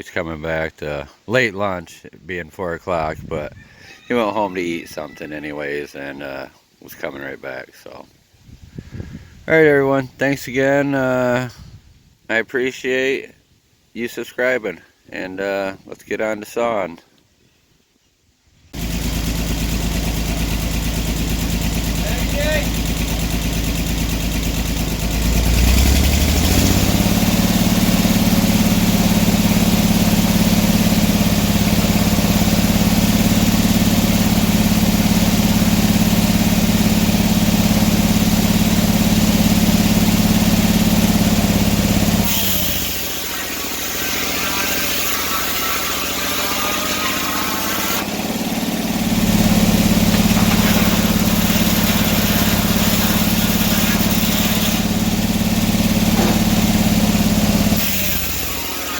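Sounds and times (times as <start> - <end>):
sawmill engine running: 18.8 - 58.9.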